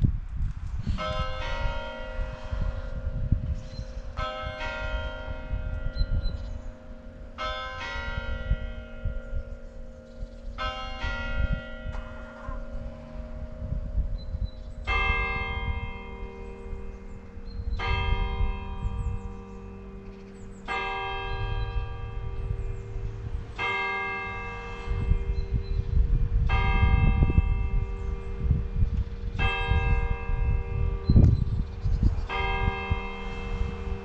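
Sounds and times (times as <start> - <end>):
church bell tolling: 0.9 - 34.0
low uneven rumble: 18.9 - 34.0.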